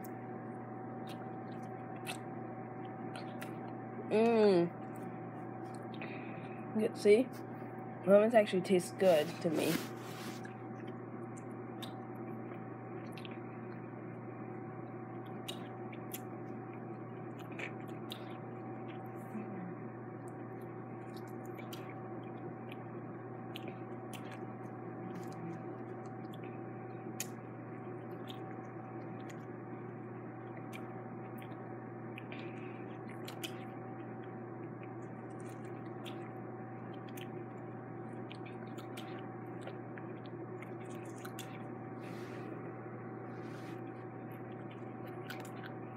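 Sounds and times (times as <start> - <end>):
steady background hum: 0.0 - 45.9
wet mouth clicks: 1.1 - 2.2.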